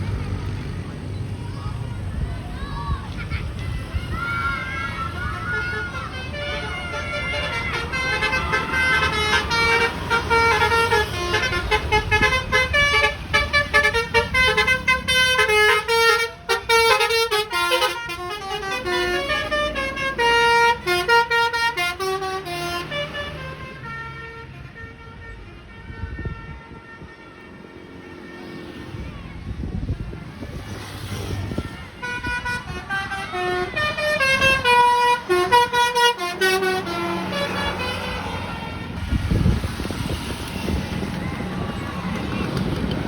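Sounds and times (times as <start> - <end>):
road vehicle noise: 0.0 - 43.0
bus horn playing musical notes: 5.5 - 28.5, 32.0 - 40.7.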